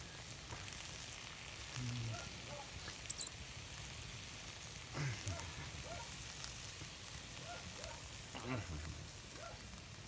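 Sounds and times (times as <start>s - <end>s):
shrimp sizzling in oil: 0.0s - 1.8s, 2.7s - 5.0s, 6.1s - 8.3s.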